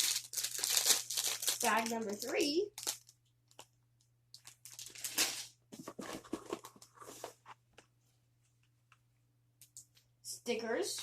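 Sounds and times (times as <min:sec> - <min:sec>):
plastic bag crinkling: 0:00.0 - 0:03.7, 0:04.3 - 0:05.5.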